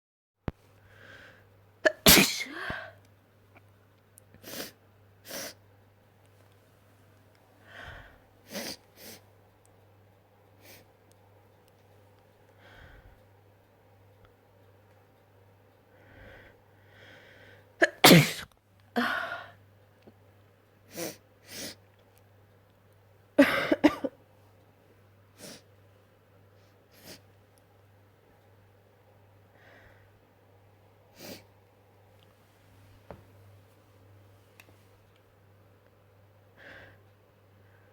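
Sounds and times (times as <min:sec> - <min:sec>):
person sneezing: 0:01.9 - 0:03.0, 0:17.8 - 0:19.4
faint sniff: 0:04.4 - 0:05.6, 0:26.6 - 0:27.2, 0:31.1 - 0:31.5
sniffs and breaths: 0:26.6 - 0:27.2.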